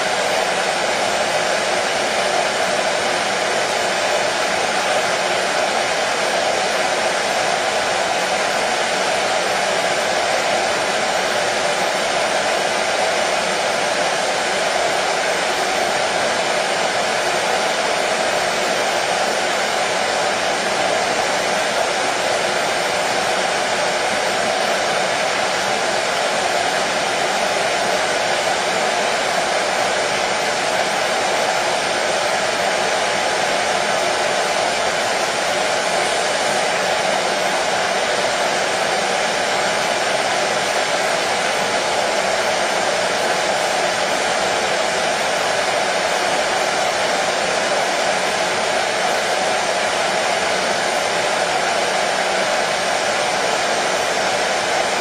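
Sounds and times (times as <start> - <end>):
hair dryer running: 0.0 - 55.0.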